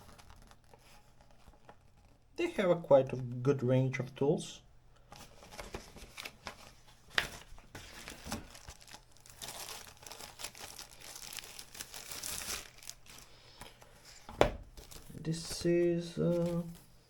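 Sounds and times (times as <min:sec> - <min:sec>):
paper and plastic crinkling: 0:00.0 - 0:02.2, 0:05.1 - 0:17.0.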